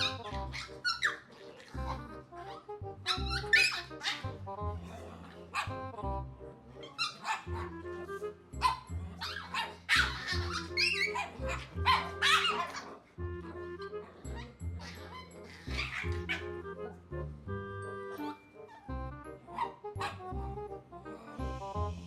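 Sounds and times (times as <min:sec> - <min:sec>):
dog barking and yipping: 0:00.0 - 0:05.8, 0:06.8 - 0:07.8, 0:08.6 - 0:13.1, 0:14.1 - 0:17.1, 0:18.6 - 0:20.3
background music: 0:00.0 - 0:22.0.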